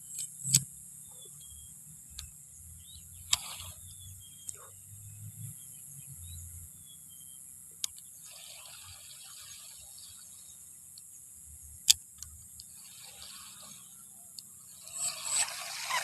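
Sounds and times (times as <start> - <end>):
sharp click: 0.0 - 1.2, 3.2 - 4.7, 7.8 - 8.1, 11.8 - 12.7
bird chirps: 0.0 - 8.4, 12.6 - 16.0
faint outdoor ambience: 0.0 - 16.0.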